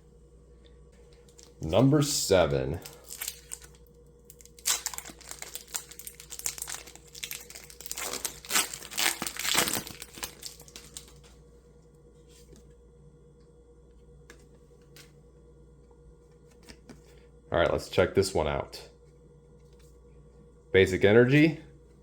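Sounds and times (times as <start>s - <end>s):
foil wrapper crinkling and tearing: 2.7s - 11.3s.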